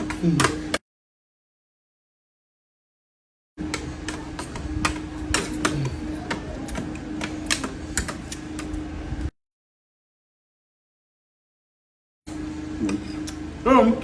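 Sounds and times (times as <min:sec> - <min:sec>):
steady low hum: 0:03.6 - 0:09.3, 0:12.3 - 0:14.0.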